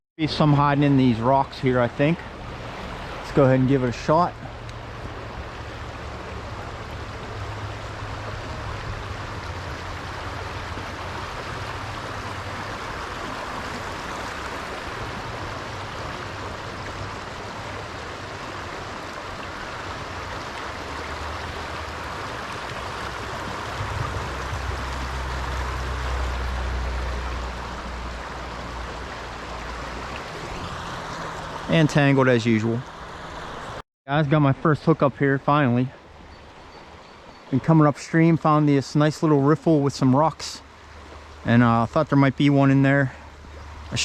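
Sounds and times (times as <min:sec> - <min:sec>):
stream flowing over rocks: 0:00.2 - 0:44.0
low rumble: 0:23.2 - 0:30.8.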